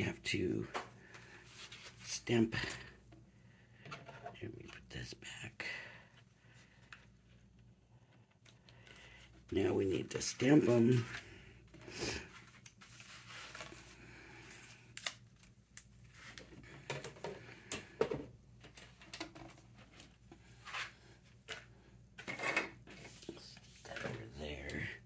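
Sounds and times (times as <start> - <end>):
paper rustling: 12.2 - 16.6.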